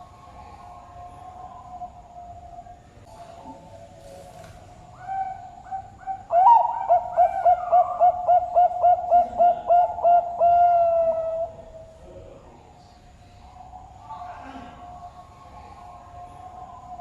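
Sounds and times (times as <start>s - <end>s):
dove singing coos: 0.0s - 12.0s.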